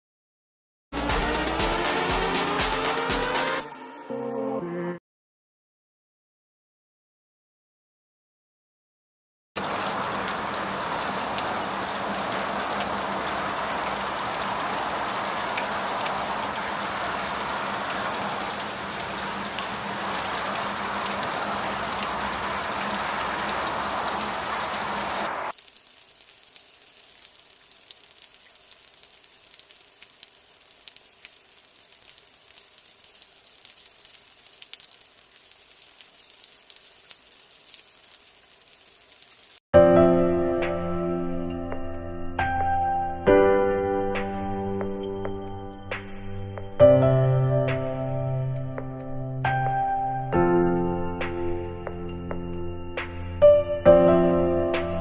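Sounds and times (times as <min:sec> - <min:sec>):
heavy rain hiss: 0:09.6 - 0:39.6.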